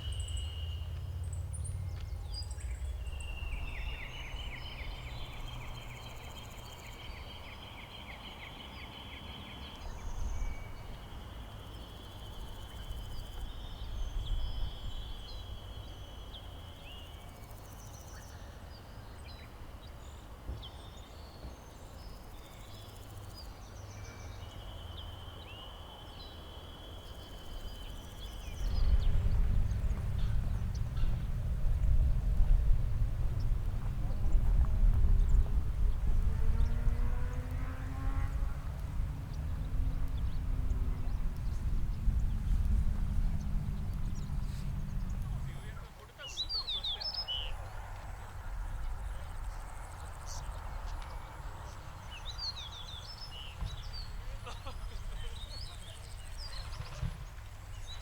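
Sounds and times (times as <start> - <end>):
low outdoor rumble: 0.0 - 7.9, 26.8 - 58.0.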